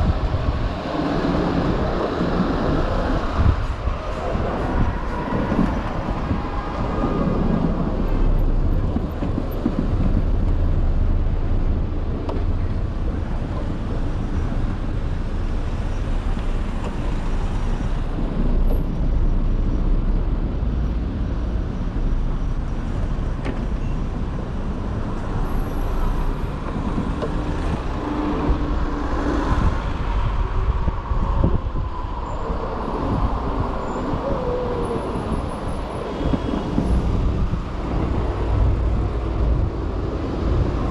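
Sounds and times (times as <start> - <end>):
surrounding cars and vehicles: 0.0 - 40.9
wind rumble on microphone: 0.0 - 40.9.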